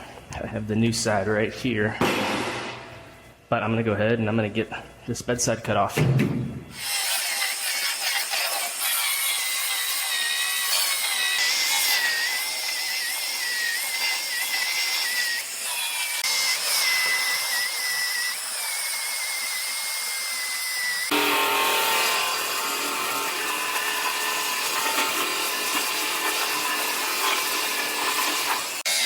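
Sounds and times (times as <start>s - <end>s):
power tool cutting metal: 6.7s - 29.0s.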